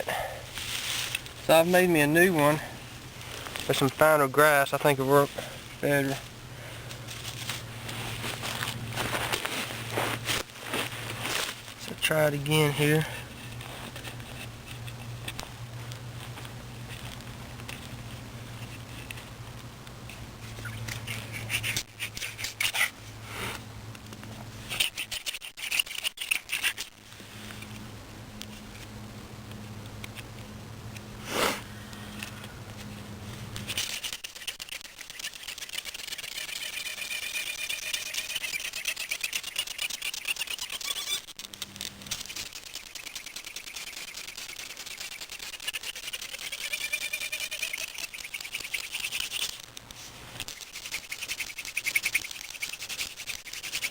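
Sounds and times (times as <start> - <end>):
wooden spindle scratching and rubbing: 0.5 - 2.7, 7.1 - 19.4, 20.1 - 23.0, 24.3 - 27.8, 32.1 - 53.9
wood grinding with high squeak: 24.7 - 26.9, 33.6 - 49.7, 50.4 - 53.9.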